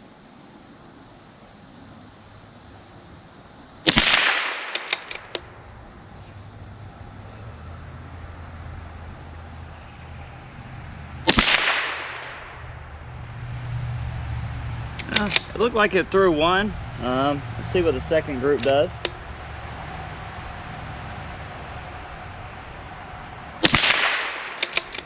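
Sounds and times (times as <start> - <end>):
rifle shots: 3.8 - 5.6, 11.2 - 12.8, 15.0 - 15.9, 23.6 - 25.0.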